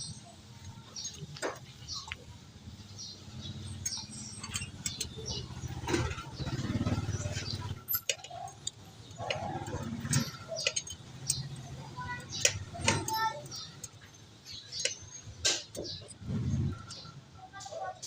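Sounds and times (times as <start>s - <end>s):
hand tools clinking on metal: 3.8s - 14.0s.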